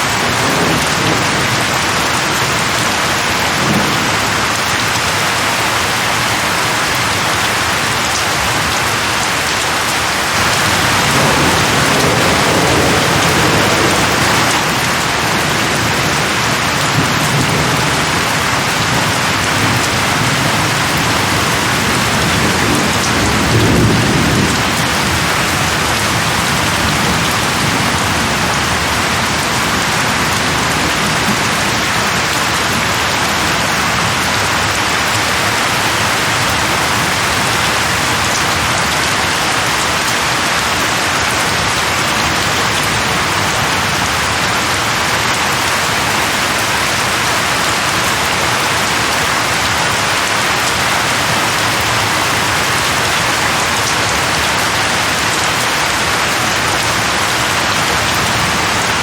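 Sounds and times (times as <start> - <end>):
steady rain falling: 0.0 - 59.0
low thunder rumbling: 0.2 - 7.0, 10.0 - 39.6.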